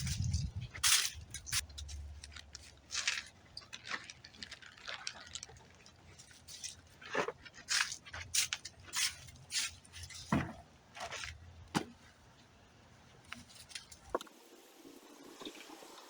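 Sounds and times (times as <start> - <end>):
scraping and rustling handling: 0.0 - 14.2.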